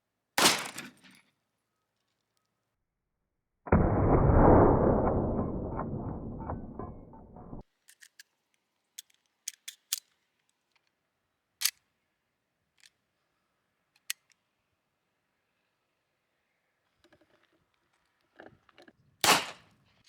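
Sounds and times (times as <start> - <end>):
metallic pistol clicks: 9.0 - 10.2.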